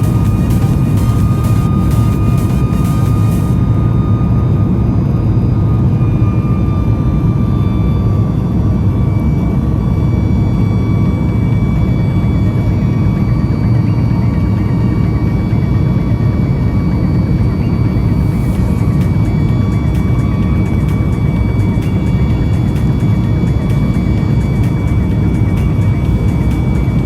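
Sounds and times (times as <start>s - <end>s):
faint high whining tones: 0.0s - 27.0s
jet engines rumbling in cabin: 0.0s - 27.0s.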